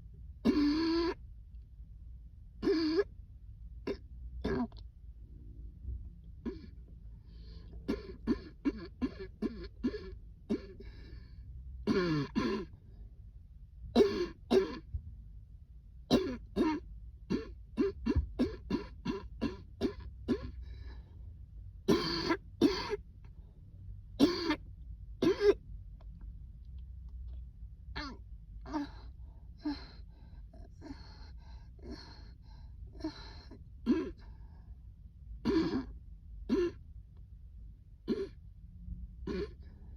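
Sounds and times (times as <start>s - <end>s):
person coughing: 0.4s - 1.2s, 3.9s - 4.8s, 6.4s - 6.8s, 7.9s - 10.9s, 11.9s - 12.8s, 14.0s - 14.9s, 16.1s - 20.6s, 21.9s - 23.0s, 24.2s - 24.6s, 25.2s - 25.6s, 35.4s - 35.9s, 36.5s - 36.8s, 38.1s - 38.4s, 39.3s - 39.7s.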